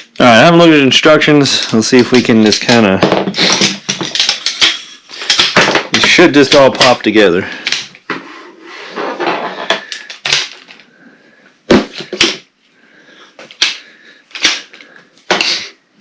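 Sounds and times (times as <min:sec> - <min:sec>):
aluminium poles clacking together: 0:01.5 - 0:07.0, 0:07.6 - 0:08.0, 0:09.2 - 0:10.8, 0:11.7 - 0:12.5, 0:13.5 - 0:15.7.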